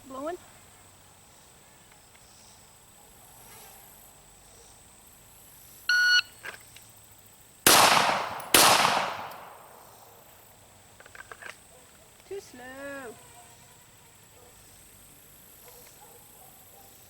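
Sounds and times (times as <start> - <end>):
pistol shots: 7.7 - 10.2.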